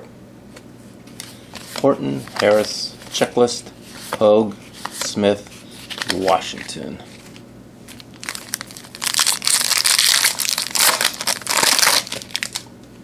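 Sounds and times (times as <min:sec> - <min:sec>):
plastic wrapper crinkling: 0:07.9 - 0:12.7.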